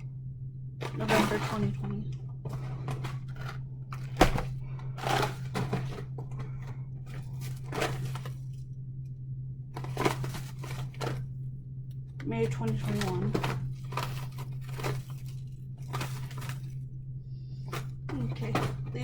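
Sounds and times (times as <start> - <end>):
steady low hum: 0.0 - 19.0
plastic crinkling and rustling: 0.8 - 8.6, 9.8 - 11.3, 12.4 - 16.9.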